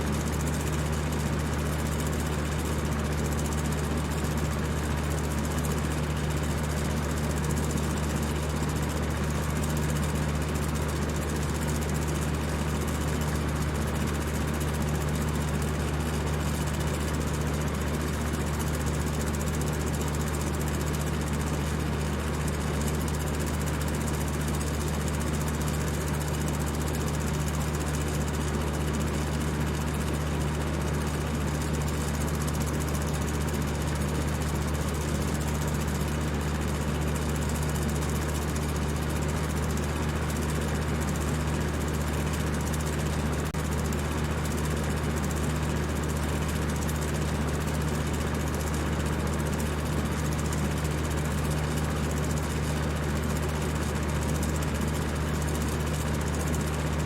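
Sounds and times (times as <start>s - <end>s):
electric fan motor hum: 0.0s - 21.2s.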